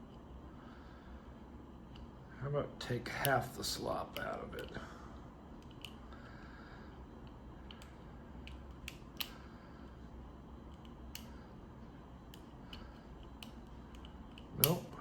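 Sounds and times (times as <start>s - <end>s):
lock pick metallic clicks: 7.6s - 9.4s, 12.3s - 15.0s.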